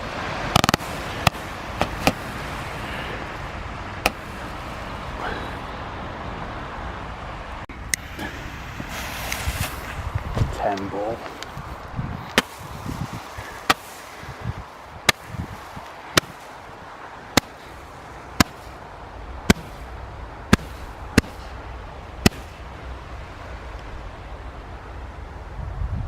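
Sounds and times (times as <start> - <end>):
roman candle firework pops: 0.5 - 2.2, 18.4 - 18.7, 22.2 - 22.6.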